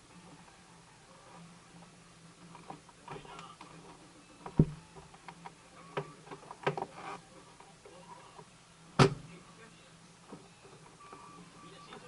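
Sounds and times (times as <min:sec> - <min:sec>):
faint low hum: 0:00.0 - 0:12.0
loud thump: 0:09.0 - 0:09.3.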